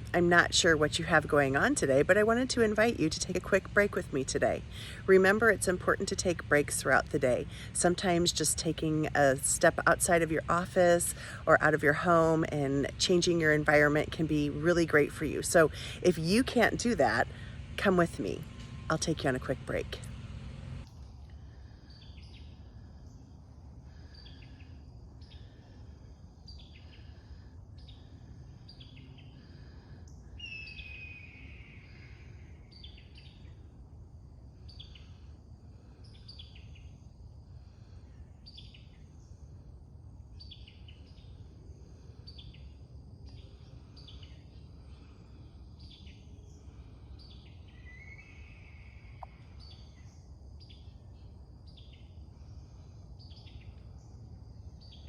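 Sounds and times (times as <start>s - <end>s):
birds chirping: 0.0s - 20.9s
low outdoor rumble: 0.0s - 55.0s.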